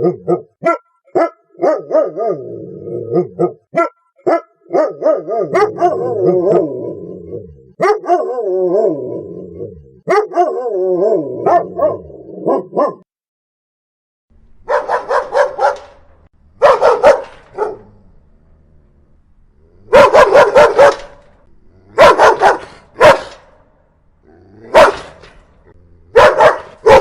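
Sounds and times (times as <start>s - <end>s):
dog barking aggressively: 0.0s - 2.5s, 3.1s - 6.7s, 7.8s - 8.5s, 10.1s - 10.8s, 11.4s - 13.0s, 14.6s - 18.0s, 19.9s - 23.6s, 24.6s - 25.4s, 26.1s - 27.0s.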